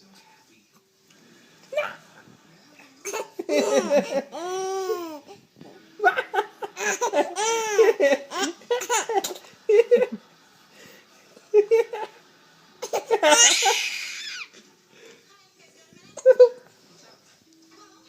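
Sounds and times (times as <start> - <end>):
baby laughing and squealing: 13.3 - 14.5.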